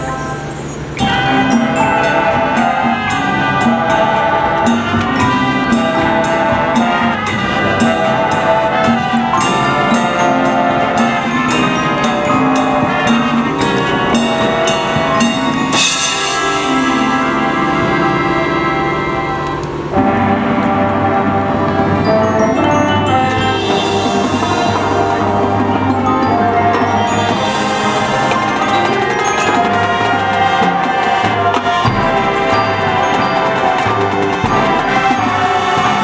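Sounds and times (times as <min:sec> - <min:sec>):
cymbal crash: 0:00.0 - 0:20.4
marching band playing: 0:00.0 - 0:36.0
steady drum beat: 0:01.0 - 0:22.1, 0:22.8 - 0:36.0.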